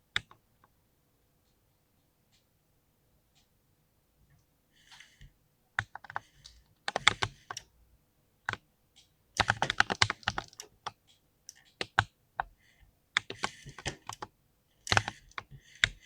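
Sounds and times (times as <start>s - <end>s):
mechanical keyboard typing: 5.8s - 7.7s, 9.4s - 12.1s, 13.2s - 14.3s, 14.9s - 16.0s.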